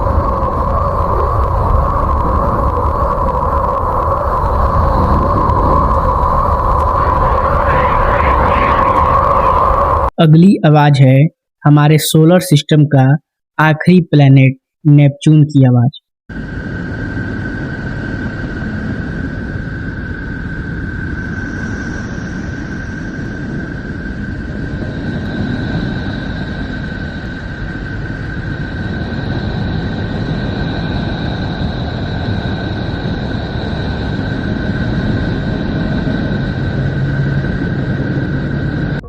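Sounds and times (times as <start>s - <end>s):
deep rumbling drone: 0.0s - 10.1s, 16.3s - 39.0s
high whistling tone: 0.0s - 10.1s.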